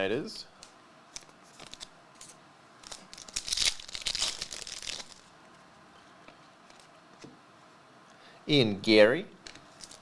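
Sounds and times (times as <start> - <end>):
plastic wrapping crinkling: 1.2 - 5.3, 9.5 - 10.0.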